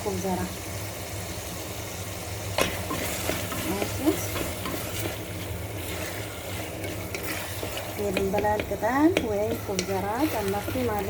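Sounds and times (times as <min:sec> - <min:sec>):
food sizzling in a pot: 0:00.0 - 0:11.0
spoon knocking against pot: 0:07.1 - 0:11.0.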